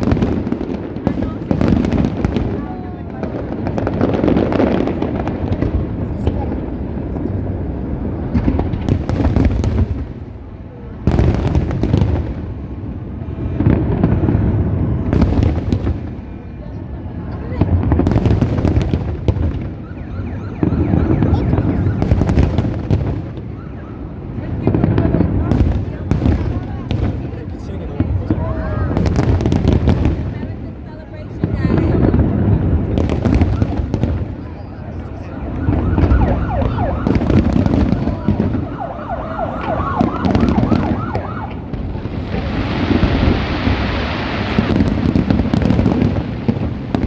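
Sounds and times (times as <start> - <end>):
fireworks bangs and crackles: 0.0 - 47.0.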